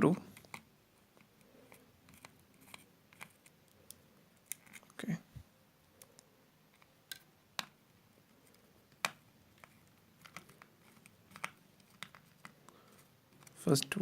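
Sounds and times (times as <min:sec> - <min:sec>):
small plastic parts clicking: 0:08.4 - 0:14.0.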